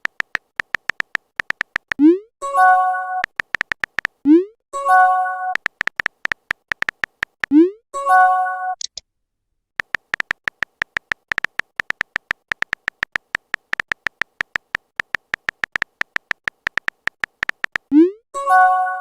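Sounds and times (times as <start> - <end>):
typing clicks: 0.0 - 2.1, 3.2 - 4.3, 5.5 - 7.6, 9.8 - 18.0.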